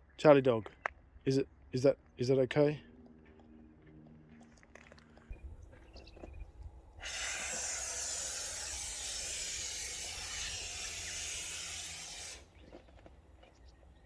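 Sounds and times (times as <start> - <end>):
spray foam can hissing: 7.0 - 12.5.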